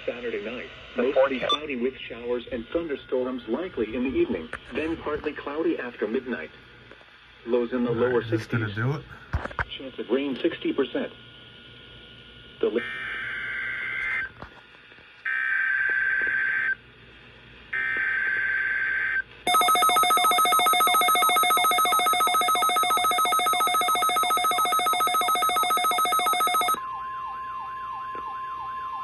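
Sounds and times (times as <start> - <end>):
rapidly pulsing electronic alarm: 15.3 - 16.8, 17.7 - 29.0
steady warning alarm tone: 17.8 - 29.0.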